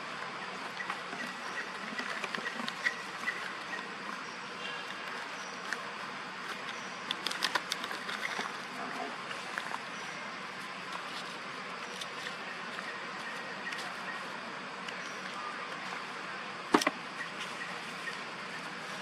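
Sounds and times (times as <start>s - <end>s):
small clicks and rustles: 4.8s - 8.6s.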